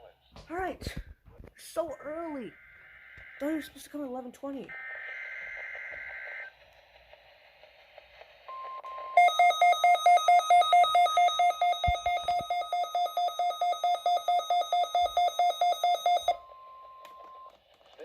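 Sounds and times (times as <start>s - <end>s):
warning alarm tone: 2.2s - 6.4s, 9.2s - 16.9s
radio receiver alarm beeping: 2.4s - 4.0s, 4.6s - 6.5s, 8.5s - 17.5s.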